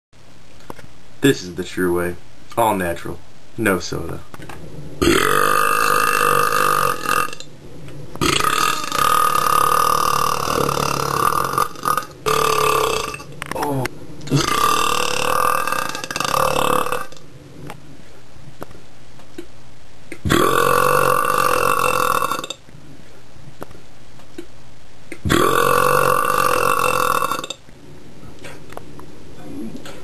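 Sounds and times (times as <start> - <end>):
man belching: 5.0 - 7.5, 8.2 - 17.2, 20.2 - 22.6, 25.2 - 27.6.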